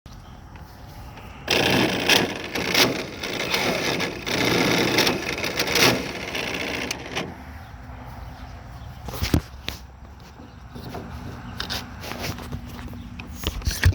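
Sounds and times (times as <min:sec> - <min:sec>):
string trimmer motor running unevenly: 0:01.5 - 0:07.4.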